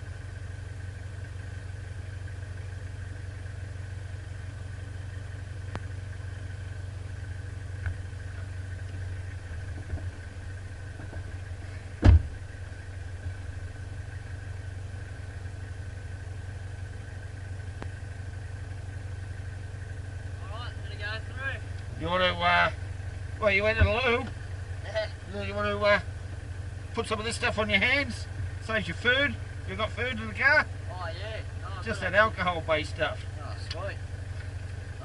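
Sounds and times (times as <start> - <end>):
vehicle engine idling: 0.0 - 35.0
sharp thump: 11.9 - 12.4.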